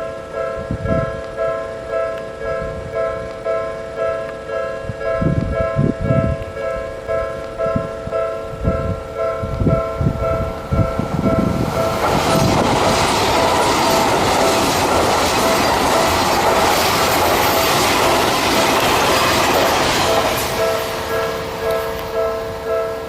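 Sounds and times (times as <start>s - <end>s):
level-crossing alarm bells: 0.0s - 23.0s
passing train rushing: 7.0s - 23.0s.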